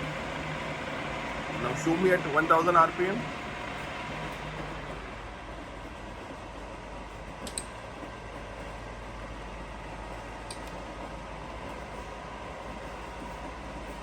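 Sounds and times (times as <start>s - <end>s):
drill machine humming: 0.0s - 14.0s
sharp clicks: 7.4s - 7.7s, 10.5s - 10.8s.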